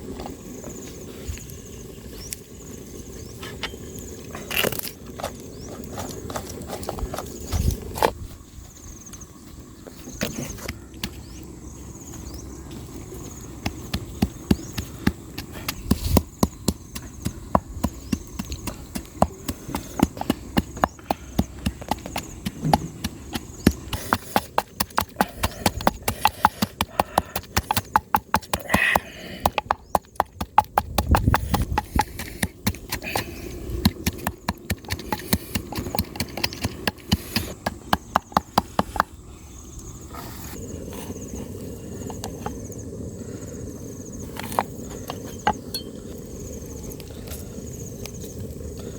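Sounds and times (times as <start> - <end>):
sharp knocks: 16.2 - 28.6.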